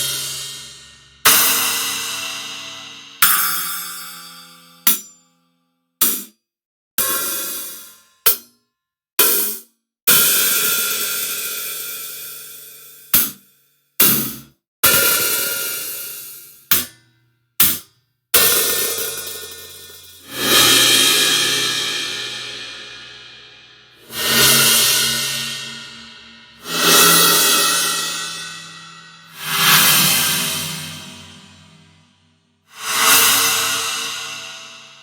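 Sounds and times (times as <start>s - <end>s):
metallic percussion strikes: 0.0s - 5.2s, 6.0s - 6.3s, 13.0s - 32.0s.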